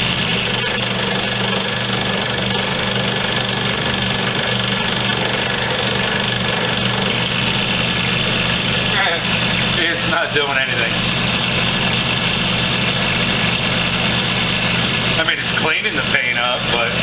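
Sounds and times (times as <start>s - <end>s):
wire wheel scraping metal: 0.0s - 7.4s
motor hum: 0.0s - 8.3s.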